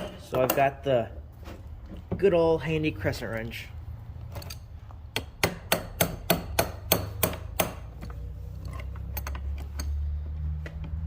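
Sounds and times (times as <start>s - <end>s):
wrench clicking on metal nut: 8.6s - 10.0s.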